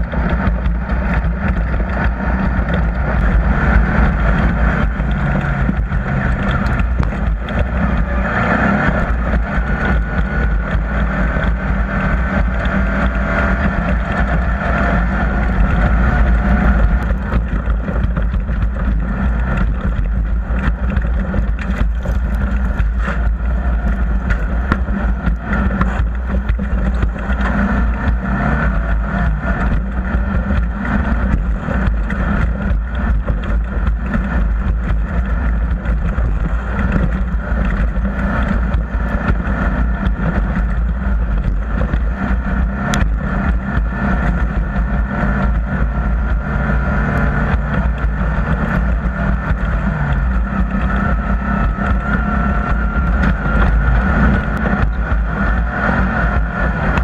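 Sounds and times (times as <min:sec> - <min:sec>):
off-road vehicle engine running: 0:00.0 - 0:57.0.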